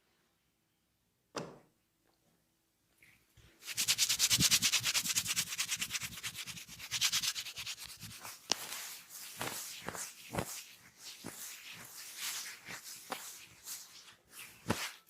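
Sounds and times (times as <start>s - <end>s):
hands rubbing with swishing friction: 3.0s - 15.0s.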